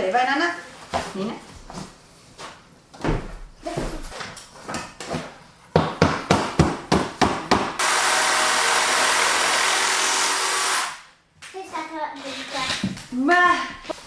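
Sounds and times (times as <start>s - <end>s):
hammer driving nails into wood: 5.8s - 10.9s
loud steady noise: 7.8s - 11.0s.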